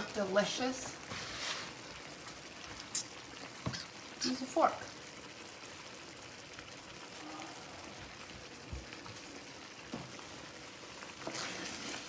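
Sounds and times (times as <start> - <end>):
meat bubbling in a pan: 0.0 - 12.0
rustle: 1.1 - 1.8.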